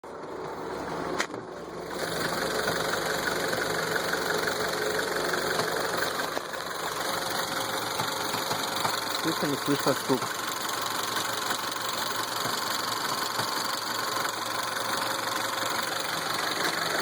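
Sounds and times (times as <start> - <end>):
car engine idling: 0.1 - 17.0
flywheel knocking: 5.3 - 17.0.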